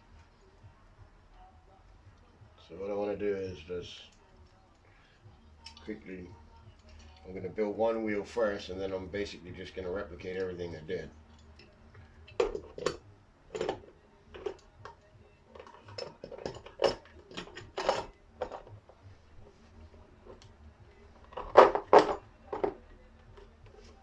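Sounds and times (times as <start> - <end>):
metal tools clinking and knocking: 11.3 - 18.9, 21.2 - 24.0.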